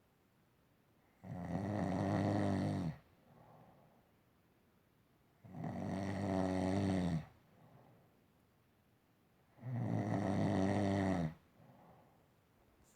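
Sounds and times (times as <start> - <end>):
man snoring: 1.2 - 3.0, 5.5 - 7.3, 9.6 - 11.4
faint breath: 3.3 - 4.1, 7.5 - 8.2, 11.6 - 12.9.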